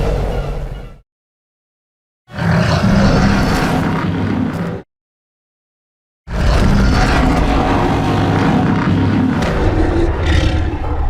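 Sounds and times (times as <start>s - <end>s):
deep rough monster roar: 2.3s - 4.8s, 6.3s - 11.0s.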